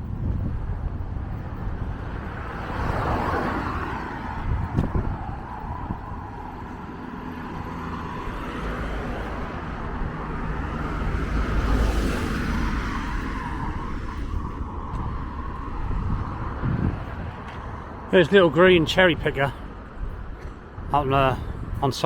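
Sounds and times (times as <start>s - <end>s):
motor vehicle passing: 0.3s - 18.2s.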